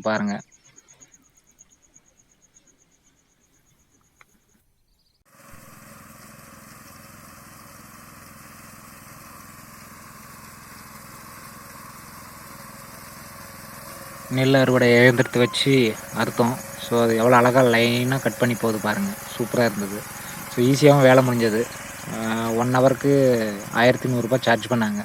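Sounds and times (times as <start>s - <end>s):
faint insect chirping: 0.0s - 5.2s, 11.6s - 25.0s
harvester engine running: 5.3s - 25.0s.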